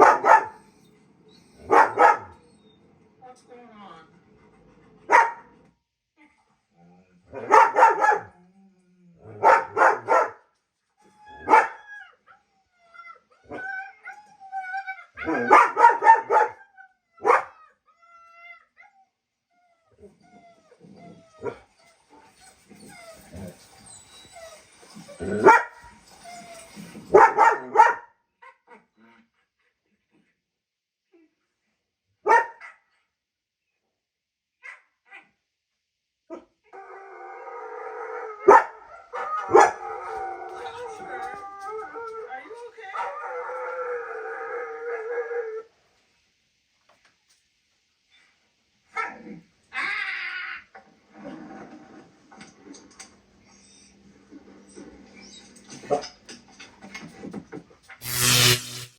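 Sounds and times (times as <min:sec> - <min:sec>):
dog barking: 0:00.0 - 0:00.7, 0:01.6 - 0:02.4, 0:05.1 - 0:05.5, 0:07.3 - 0:08.4, 0:09.4 - 0:10.4, 0:11.5 - 0:11.8, 0:15.2 - 0:16.6, 0:17.2 - 0:17.6, 0:25.4 - 0:25.8, 0:27.1 - 0:28.1, 0:32.2 - 0:32.8, 0:38.5 - 0:38.8, 0:39.5 - 0:39.8
dog whining or howling: 0:11.0 - 0:15.5, 0:16.6 - 0:27.2, 0:36.7 - 0:45.7.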